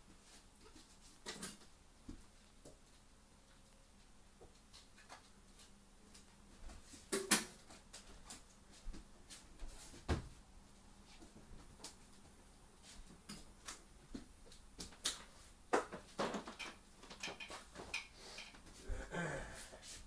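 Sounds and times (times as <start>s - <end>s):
household objects knocking and rustling: 15.7s - 18.1s.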